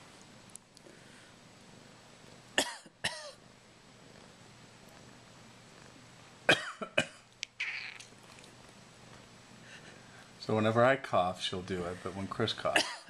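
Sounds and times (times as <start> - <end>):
person coughing: 2.6 - 3.4, 6.5 - 7.2, 12.7 - 13.0.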